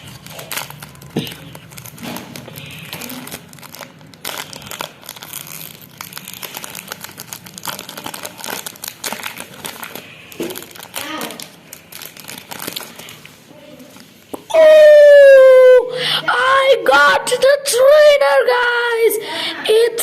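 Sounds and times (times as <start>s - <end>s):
foil wrapper crinkling and tearing: 0.0s - 14.2s.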